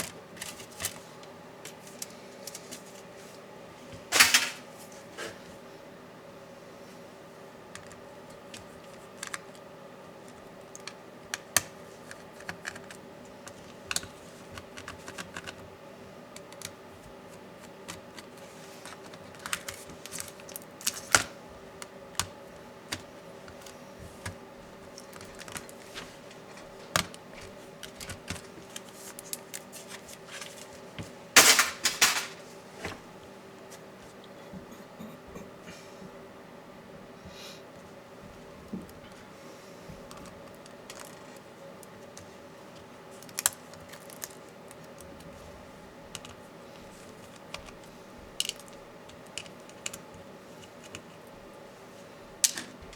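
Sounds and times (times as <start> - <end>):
faint steady hum: 0.0 - 52.9
laptop parts clicking and tapping: 10.7 - 15.6.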